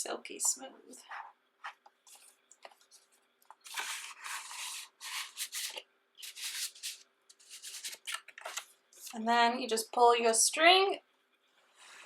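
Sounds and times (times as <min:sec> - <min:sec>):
cardboard packaging rubbing and sliding: 0:02.1 - 0:08.1.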